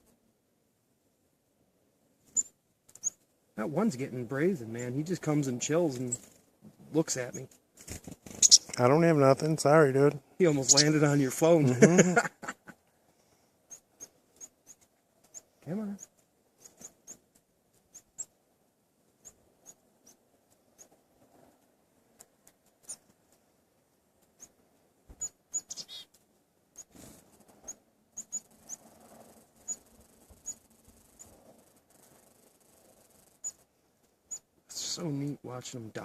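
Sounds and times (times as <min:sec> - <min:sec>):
small birds calling: 0:07.2 - 0:08.9, 0:10.4 - 0:11.6, 0:12.2 - 0:18.4, 0:24.3 - 0:26.2, 0:26.8 - 0:28.9, 0:29.5 - 0:31.4, 0:33.2 - 0:33.6.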